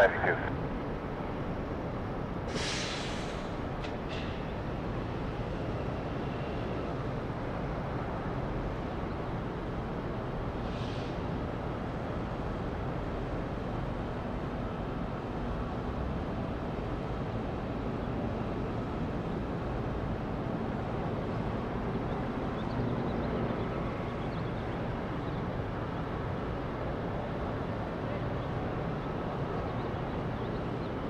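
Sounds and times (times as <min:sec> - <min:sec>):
jet engine rumble: 0:00.0 - 0:05.6.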